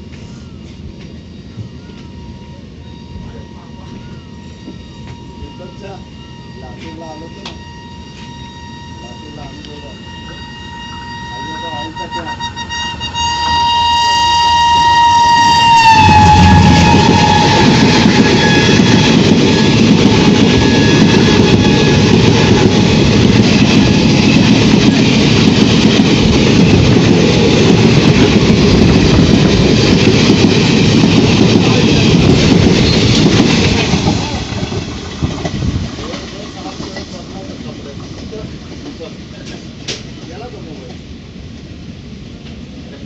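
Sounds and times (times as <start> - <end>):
train cars rolling and wheel clatter: 0.0 - 43.0
train horn: 1.9 - 22.9.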